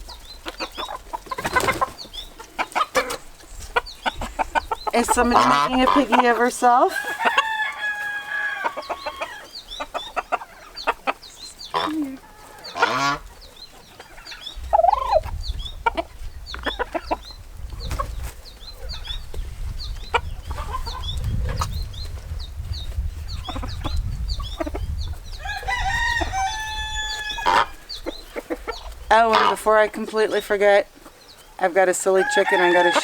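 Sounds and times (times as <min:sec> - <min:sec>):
chickens clucking: 0:00.0 - 0:33.0
high chick peeps: 0:00.0 - 0:33.0
rooster crowing: 0:06.9 - 0:09.5, 0:25.4 - 0:27.9, 0:32.2 - 0:33.0.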